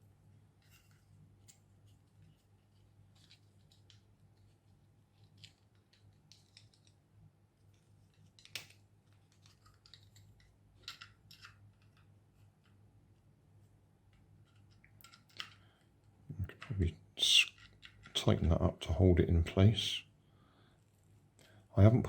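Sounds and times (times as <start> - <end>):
low steady hum: 8.7 - 22.0.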